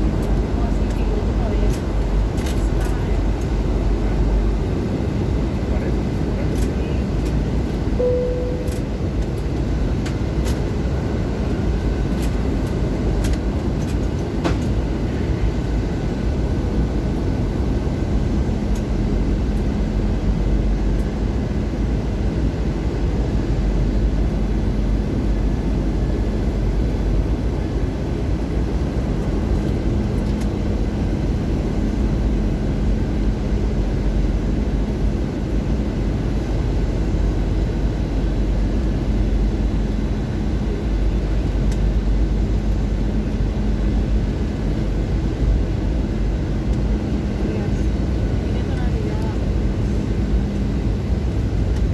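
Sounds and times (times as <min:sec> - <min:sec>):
aircraft cabin rumble and hiss: 0:00.0 - 0:51.9
short faint tone: 0:08.0 - 0:09.0.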